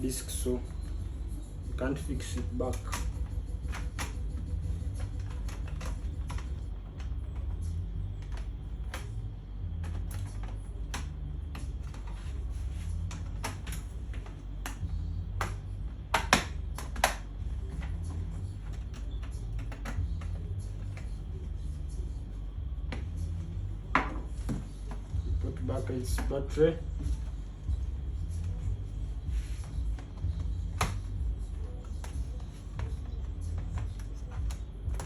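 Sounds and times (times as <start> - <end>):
low hum: 0.0 - 35.0
hands tapping laptop plastic case: 10.1 - 17.3, 29.4 - 35.0.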